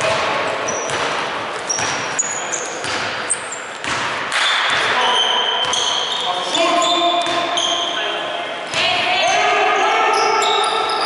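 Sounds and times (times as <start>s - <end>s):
crowd noise: 0.0s - 11.0s
shoes squeaking on court: 0.6s - 8.1s
basketball bouncing: 2.8s - 3.2s, 3.8s - 4.9s, 7.2s - 7.5s, 8.7s - 9.0s.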